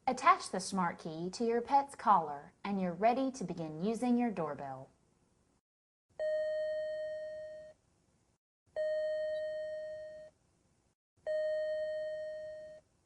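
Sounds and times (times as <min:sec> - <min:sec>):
electronic doorbell chime: 0:06.2 - 0:07.8, 0:08.8 - 0:10.3, 0:11.3 - 0:12.8.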